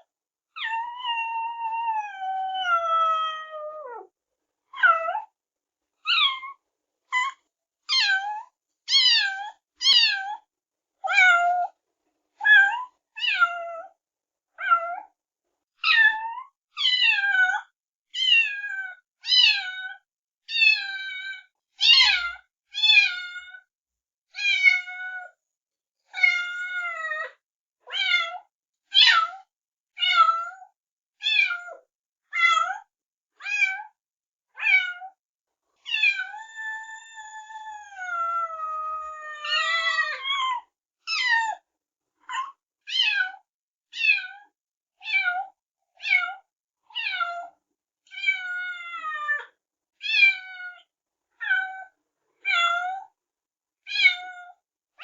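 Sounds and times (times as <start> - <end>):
kitten meowing: 7.9 - 10.3, 35.9 - 41.5.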